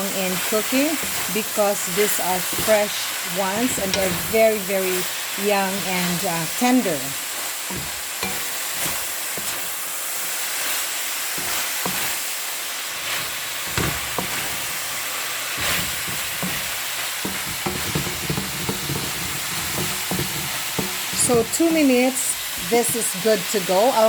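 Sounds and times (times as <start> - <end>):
food sizzling in oil: 0.0 - 24.0
utensil scraping a pot: 0.4 - 5.9, 7.2 - 9.8, 13.0 - 23.2.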